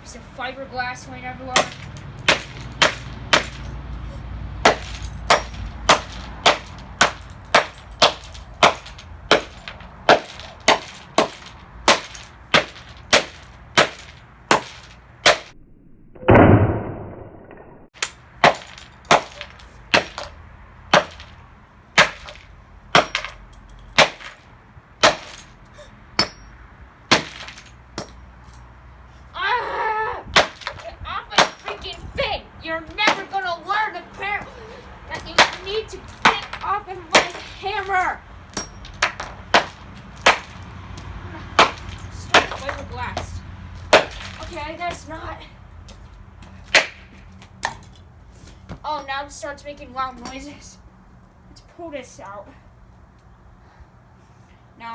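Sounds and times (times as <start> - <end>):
hammer clanging on metal: 1.5 - 15.5, 22.0 - 24.4, 26.2 - 28.6, 35.1 - 41.0.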